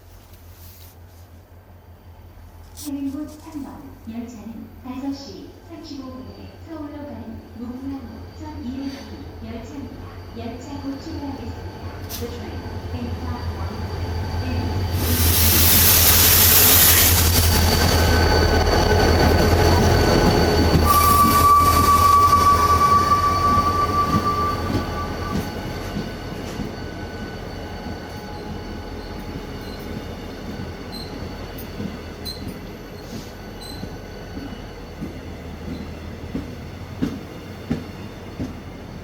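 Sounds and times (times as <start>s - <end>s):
train rumble: 9.7s - 39.0s
high brake squeal: 13.9s - 31.6s, 32.2s - 34.8s
train rushing hiss: 14.5s - 26.9s.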